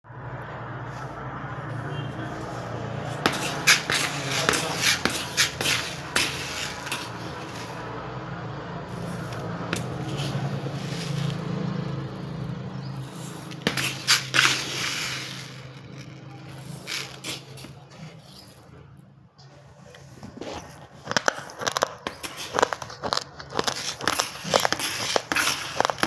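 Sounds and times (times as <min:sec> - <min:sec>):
crunchy chewing: 0:20.2 - 0:26.0.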